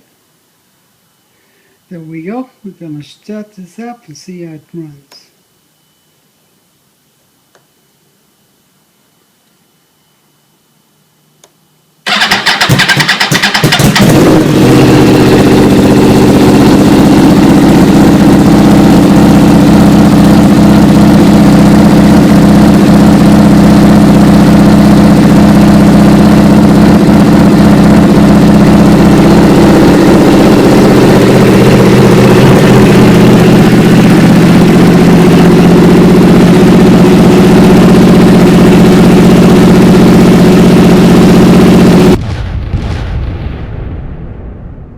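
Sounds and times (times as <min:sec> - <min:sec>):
motorcycle engine starting and idling: 0:12.0 - 0:42.2.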